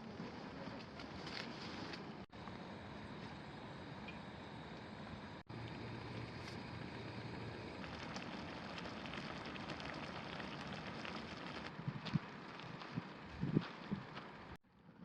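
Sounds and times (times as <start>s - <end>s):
campfire crackling: 5.5s - 14.6s
wind on microphone: 11.4s - 14.2s.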